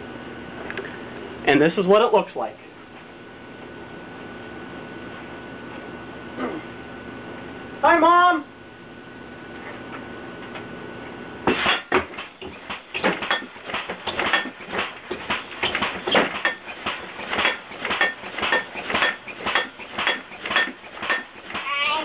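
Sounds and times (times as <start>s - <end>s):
faint hum with high tone: 0.0s - 13.7s, 20.2s - 22.0s
clattering metal clangs: 11.5s - 21.7s.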